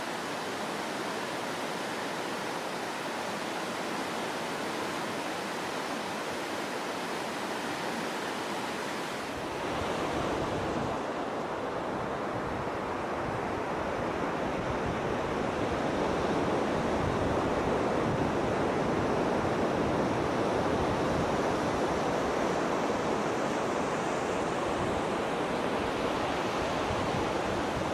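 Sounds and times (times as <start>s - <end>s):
stream water rushing: 0.0s - 14.5s.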